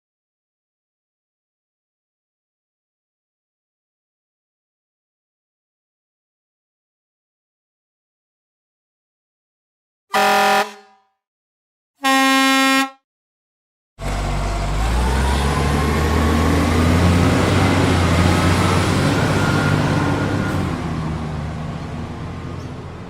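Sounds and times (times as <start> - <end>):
truck horn blasts: 10.1 - 11.1, 12.0 - 13.0
truck engine rumbling: 14.0 - 23.0.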